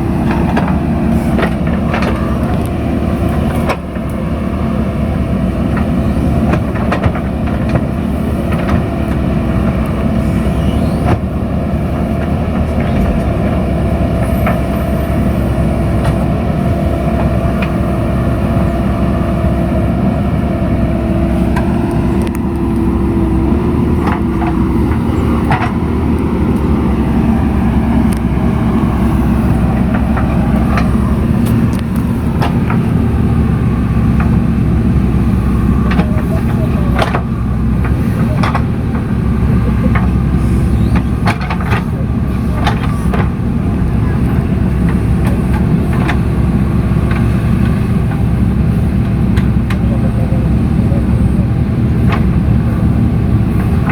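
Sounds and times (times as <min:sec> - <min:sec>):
diesel engine running: 0:00.0 - 0:53.9.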